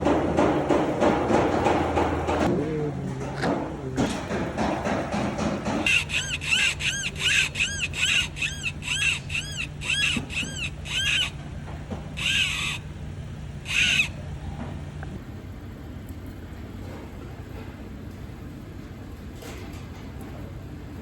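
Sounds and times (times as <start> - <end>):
high-pitched squeak: 5.9 - 11.4, 12.2 - 12.8, 13.7 - 14.2.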